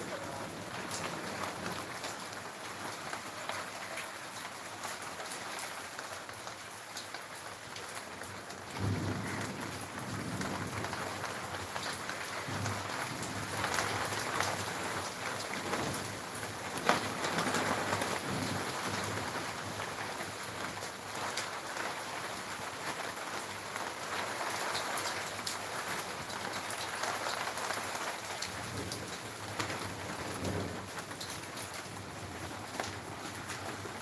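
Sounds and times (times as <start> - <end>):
heavy rain pattering: 0.0 - 34.0.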